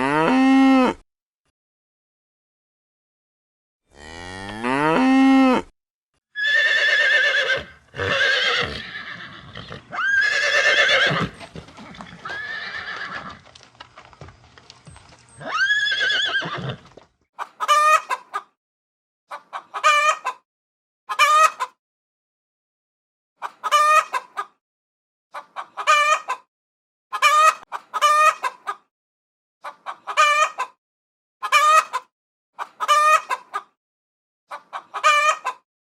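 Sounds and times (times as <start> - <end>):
horse whinnying: 6.4 - 13.5, 15.4 - 16.9
chicken clucking: 17.4 - 18.6, 19.3 - 20.4, 21.1 - 21.8, 23.4 - 24.6, 25.3 - 26.5, 27.1 - 28.9, 29.6 - 30.8, 31.4 - 33.8, 34.5 - 35.6.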